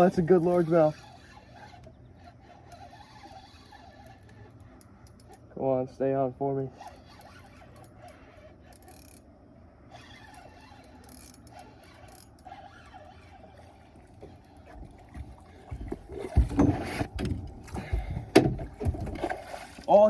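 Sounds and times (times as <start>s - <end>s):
fish thrashing and splashing: 10.0s - 20.0s.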